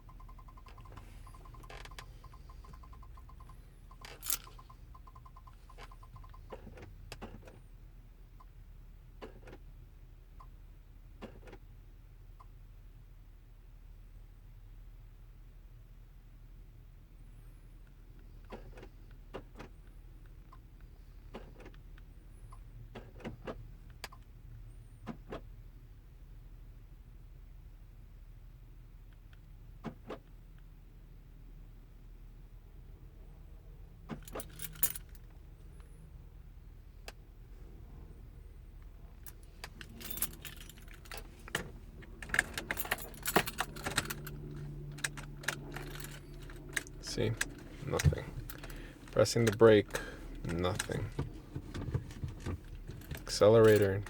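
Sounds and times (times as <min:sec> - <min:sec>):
keys jangling on a key ring: 0:00.3 - 0:06.4, 0:34.2 - 0:35.3, 0:39.2 - 0:51.1, 0:52.8 - 0:54.0
low steady hum: 0:30.6 - 0:54.0.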